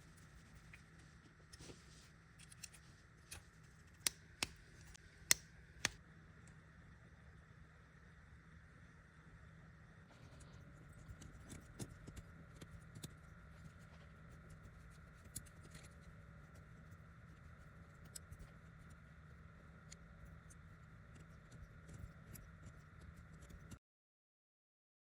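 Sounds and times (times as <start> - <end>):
faint steady hum: 0.0 - 23.8
small irregular clicks and taps: 2.4 - 6.0, 10.4 - 23.8.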